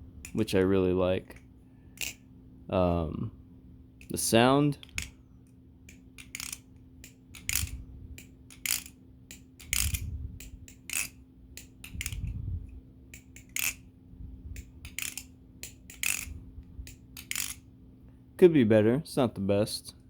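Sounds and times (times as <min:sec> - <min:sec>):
butterfly knife metallic clicking: 0:00.2 - 0:00.5, 0:02.0 - 0:02.2, 0:05.9 - 0:12.4, 0:13.1 - 0:13.8, 0:14.6 - 0:17.6.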